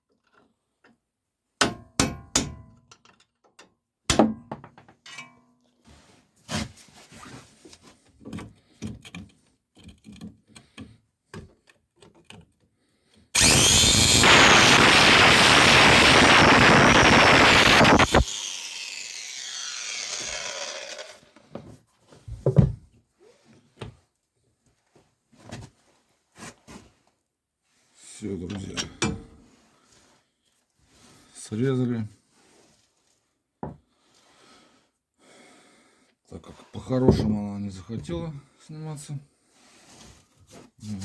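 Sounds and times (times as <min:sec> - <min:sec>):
angle grinder cutting metal: 0:13.4 - 0:21.3.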